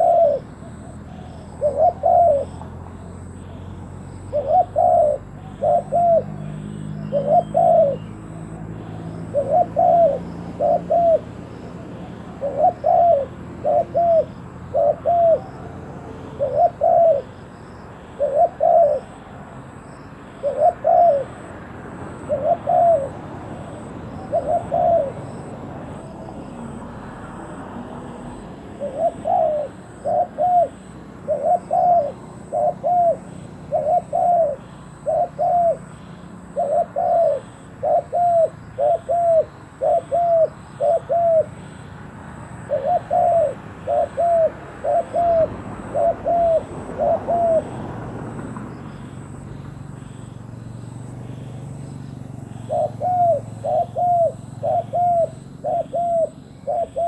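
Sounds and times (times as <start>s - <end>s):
dove cooing: 0.0s - 57.0s
faint small birds chirping: 48.8s - 57.0s.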